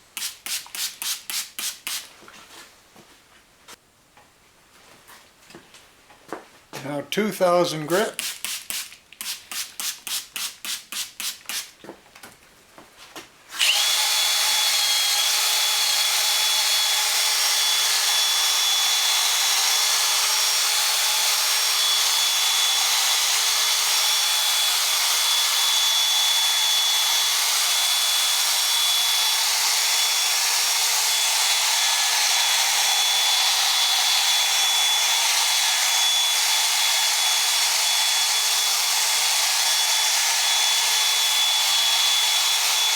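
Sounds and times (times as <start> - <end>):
quick rhythmic strokes: 8.0 - 11.8
power drill sanding with a whine: 13.5 - 42.9.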